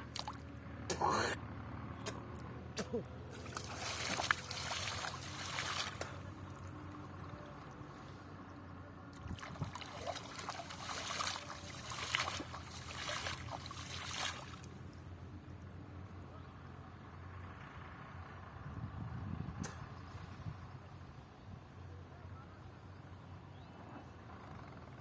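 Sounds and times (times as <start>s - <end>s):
water splashing and trickling: 0.0s - 0.7s, 3.3s - 8.4s, 9.0s - 15.0s.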